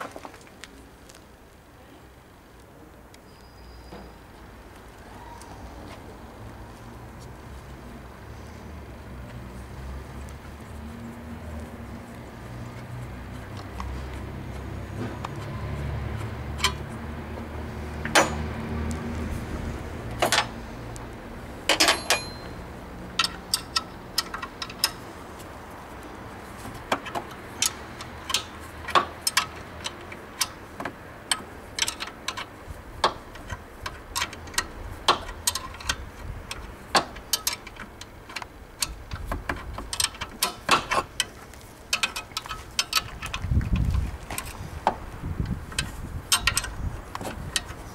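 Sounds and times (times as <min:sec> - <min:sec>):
wrenches and bolts clinking: 0:16.5 - 0:17.0, 0:18.0 - 0:18.5, 0:20.1 - 0:20.6, 0:21.7 - 0:25.1, 0:26.6 - 0:44.6, 0:45.7 - 0:47.9.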